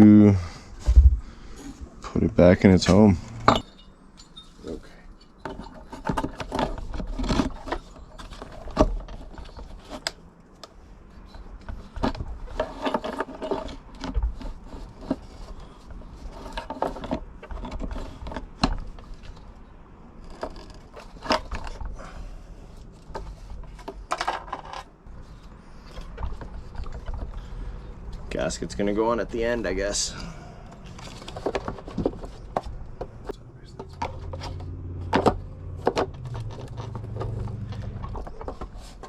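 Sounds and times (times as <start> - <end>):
metallic knocks and clinks: 3.4 - 5.8.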